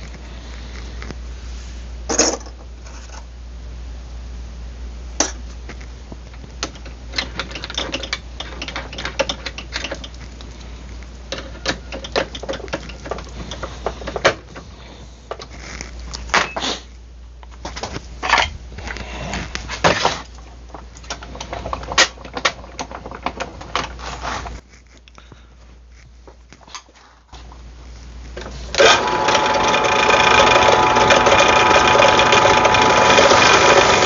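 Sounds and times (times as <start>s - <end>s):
steady low hum: 0.0s - 34.0s
metal parts and tools clicking: 6.6s - 10.2s, 11.3s - 14.3s.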